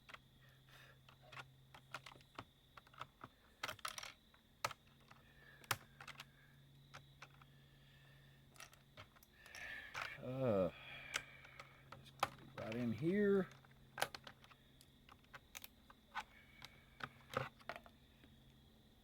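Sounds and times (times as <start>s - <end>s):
clicks and taps on plastic casing: 11.2s - 17.9s.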